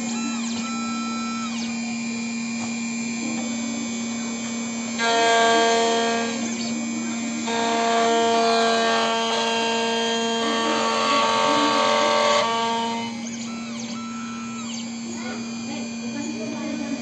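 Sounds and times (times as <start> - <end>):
key-cutting machine motor whining: 0.0 - 17.0
mains hum: 0.0 - 17.0.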